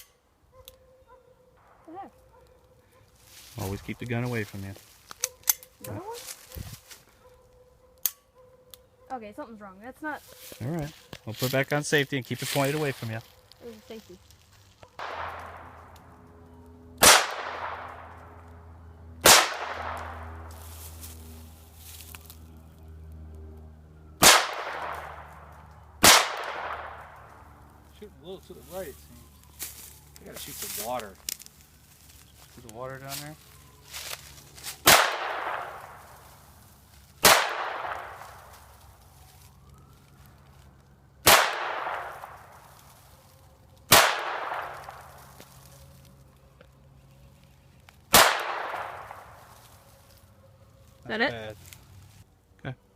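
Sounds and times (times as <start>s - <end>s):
gunshots with echoing tail: 15.0s - 16.2s, 17.0s - 18.5s, 19.2s - 20.7s, 24.2s - 27.4s, 34.8s - 36.2s, 37.2s - 38.5s, 41.2s - 42.5s, 43.9s - 45.1s, 48.1s - 49.4s.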